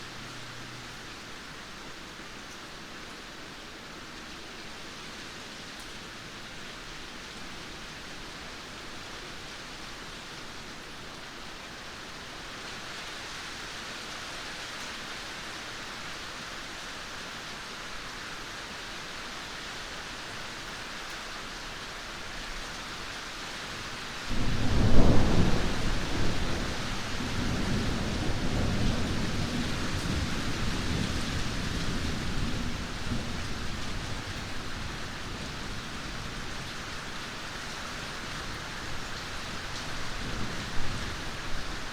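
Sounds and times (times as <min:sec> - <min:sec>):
rain hissing: 0:19.8 - 0:41.9
thunderclap and rolling rumble: 0:24.3 - 0:36.7.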